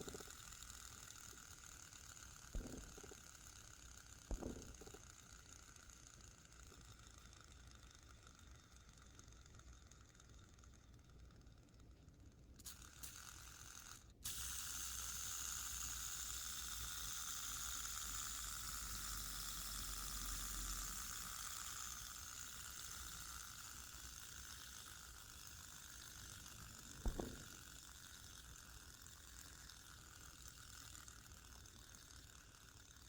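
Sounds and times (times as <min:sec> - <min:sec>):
fidget spinner whirring: 0:00.0 - 0:33.0
sharp knock: 0:27.0 - 0:27.5.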